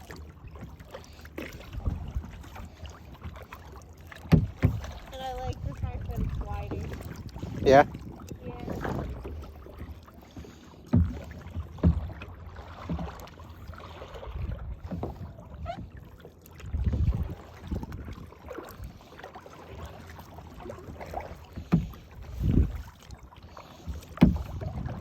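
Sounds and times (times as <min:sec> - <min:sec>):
kayak paddling: 0:00.0 - 0:25.0
dull knocks against boat: 0:04.1 - 0:05.2, 0:10.9 - 0:13.4, 0:14.7 - 0:15.9, 0:21.0 - 0:22.8, 0:23.8 - 0:25.0.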